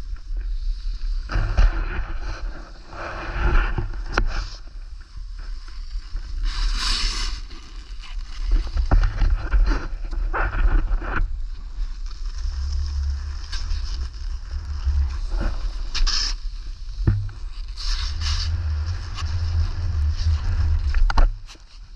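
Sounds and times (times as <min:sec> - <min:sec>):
wind rumbling on microphone: 0:00.0 - 0:21.9
snow spraying hiss: 0:06.4 - 0:07.6.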